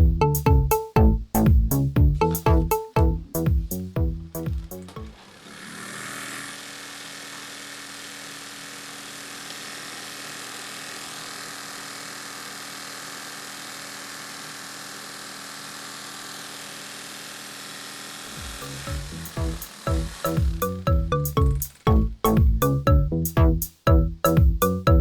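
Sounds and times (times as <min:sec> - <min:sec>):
electric fan running: 0:04.6 - 0:22.0.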